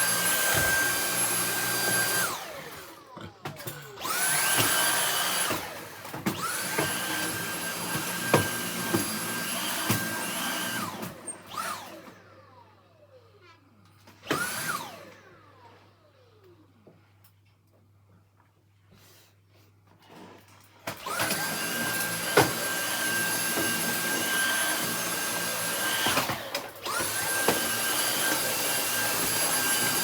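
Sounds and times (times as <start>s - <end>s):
vacuum motor spinning down: 0.0s - 13.4s, 21.0s - 30.0s
stick vacuum whining: 0.0s - 13.5s, 14.1s - 16.6s, 20.0s - 30.0s.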